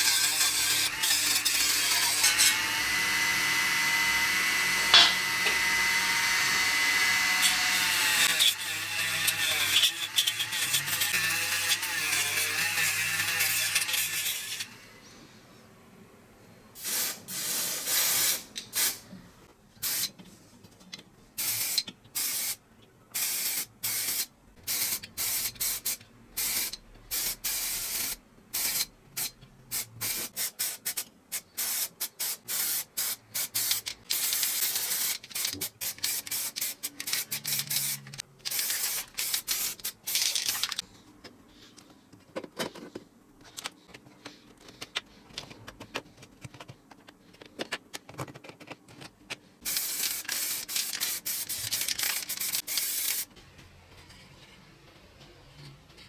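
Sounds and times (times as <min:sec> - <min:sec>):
aerosol spray can hissing: 0:16.8 - 0:19.0, 0:49.7 - 0:53.3.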